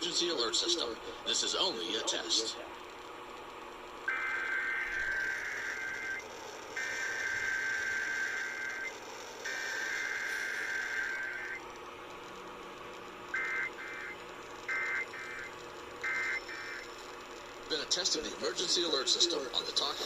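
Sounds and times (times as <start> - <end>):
buzzy digital data bursts: 4.1 - 11.6, 13.3 - 16.9.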